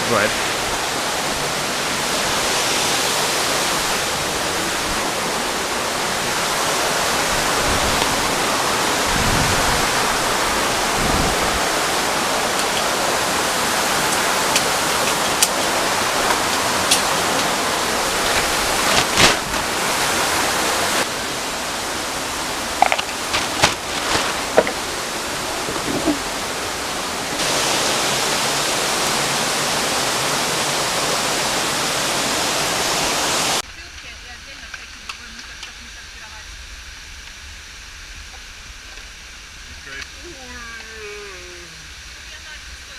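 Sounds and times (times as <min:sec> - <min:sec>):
waterfall rushing: 0:00.0 - 0:33.6.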